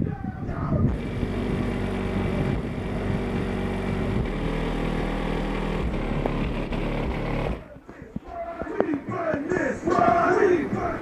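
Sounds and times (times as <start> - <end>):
engine running: 0.9 - 7.8.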